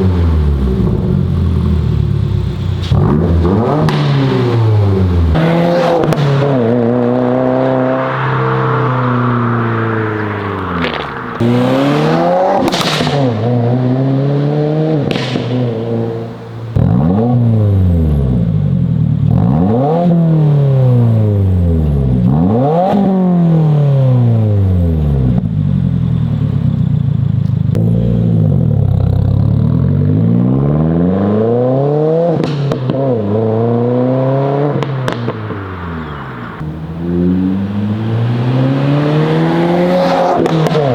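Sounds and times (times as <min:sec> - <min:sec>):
car engine revving: 0:00.0 - 0:40.9
exhaust pops: 0:02.7 - 0:06.7, 0:10.4 - 0:13.8, 0:14.9 - 0:17.3, 0:34.7 - 0:36.8.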